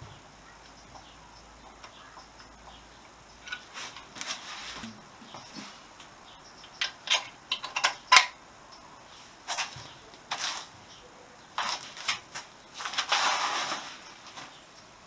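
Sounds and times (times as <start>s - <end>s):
metal clicks and taps: 6.0s - 8.4s.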